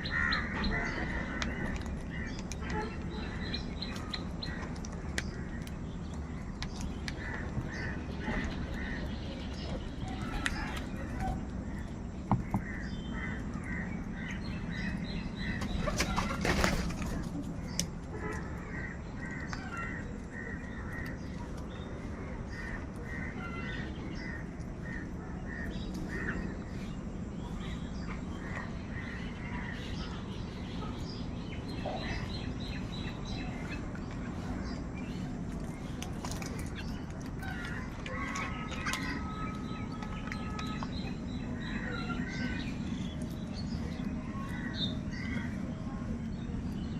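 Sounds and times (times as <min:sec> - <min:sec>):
crows cawing: 0:00.0 - 0:02.4
low background hum: 0:00.0 - 0:46.9
other bird calls: 0:00.0 - 0:46.9.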